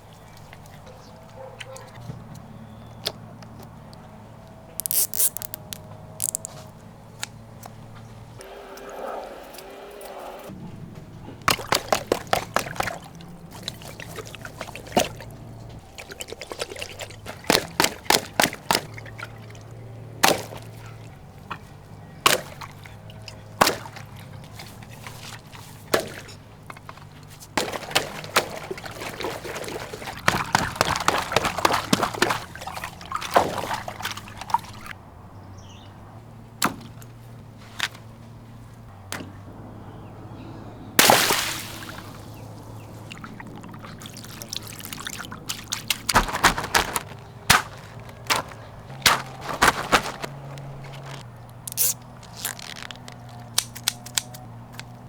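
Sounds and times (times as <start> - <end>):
water pouring and splashing: 4.8 - 6.7, 11.4 - 35.0, 41.0 - 53.7.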